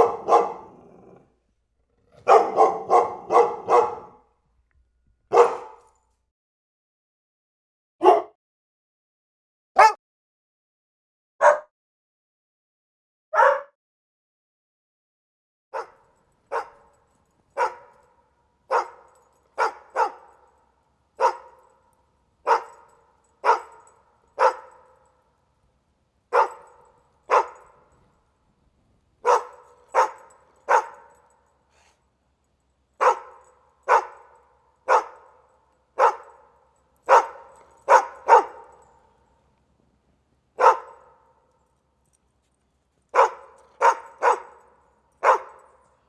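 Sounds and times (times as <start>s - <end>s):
dog barking: 0.0s - 1.2s, 2.1s - 4.2s, 5.3s - 5.9s, 8.0s - 8.4s, 9.8s - 10.0s, 11.4s - 11.7s, 13.3s - 13.8s, 15.8s - 17.0s, 17.6s - 20.5s, 21.2s - 21.7s, 22.4s - 25.1s, 26.3s - 27.9s, 29.2s - 31.9s, 33.0s - 35.4s, 36.0s - 38.9s, 40.6s - 41.3s, 43.1s - 45.8s.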